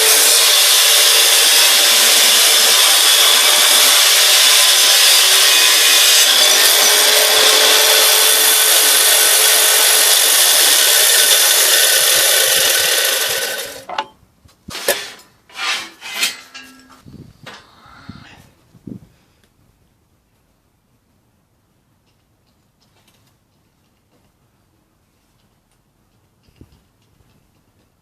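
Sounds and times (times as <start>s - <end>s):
angle grinder cutting: 0.0s - 14.1s.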